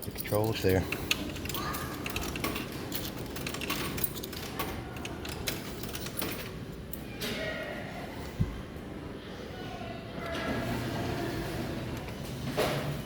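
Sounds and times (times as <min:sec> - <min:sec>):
claw machine clicks and rattles: 0:00.0 - 0:06.6.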